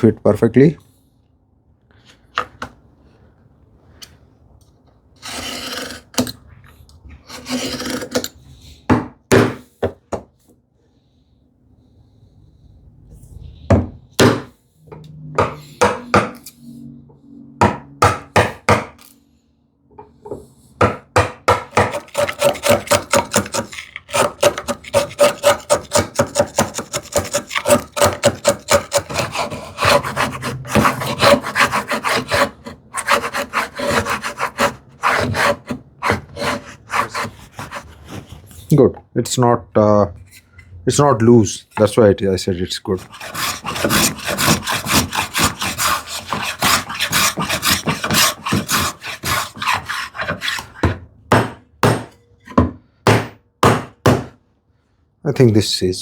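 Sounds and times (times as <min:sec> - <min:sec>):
tool scraping wood: 0:05.2 - 0:06.4, 0:07.2 - 0:08.3, 0:21.5 - 0:38.7, 0:42.9 - 0:53.2
rhythmic rasping on wood: 0:20.8 - 0:38.3, 0:43.0 - 0:52.0
sharp knocks on wood: 0:50.8 - 0:54.4.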